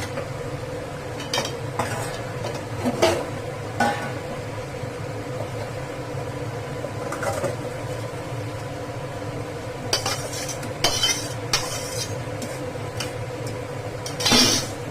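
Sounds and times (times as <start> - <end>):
spoon scraping metal pan: 10.0 - 12.6, 14.1 - 14.8.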